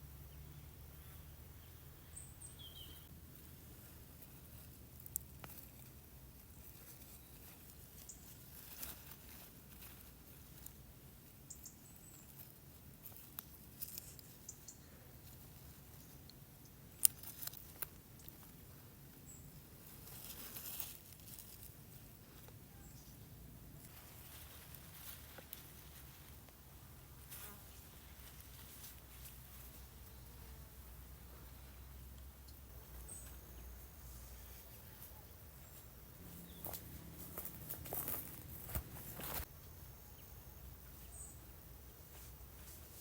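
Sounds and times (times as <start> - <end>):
faint bird chirps: 0.2 - 3.1
brief rustle: 36.6 - 39.5.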